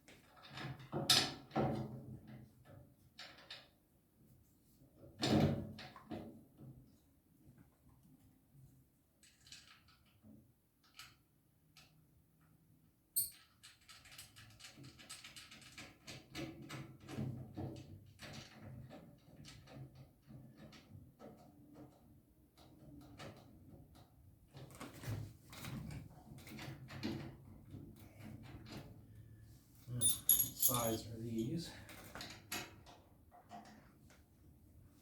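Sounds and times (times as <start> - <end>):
metal hardware clinking and rattling: 30.0 - 31.5.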